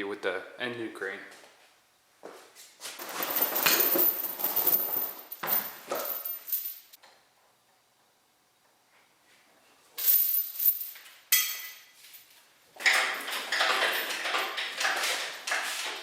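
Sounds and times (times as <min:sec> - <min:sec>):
metal parts clinking and rattling: 0:03.0 - 0:07.0, 0:10.0 - 0:16.0.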